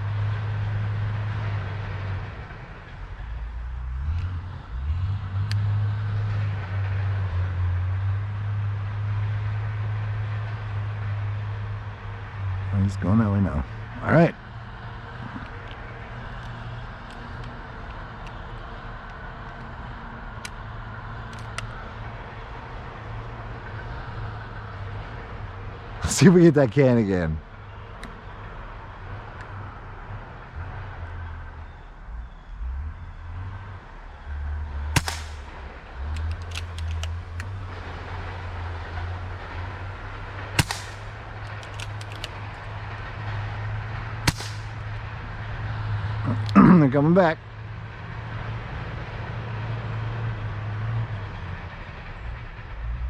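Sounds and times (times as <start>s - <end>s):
distant vehicle engine drone: 0.0s - 53.0s
air rifle shots: 35.0s - 35.5s, 40.6s - 42.3s, 44.2s - 44.8s
light clicks: 36.1s - 37.6s, 40.6s - 42.7s.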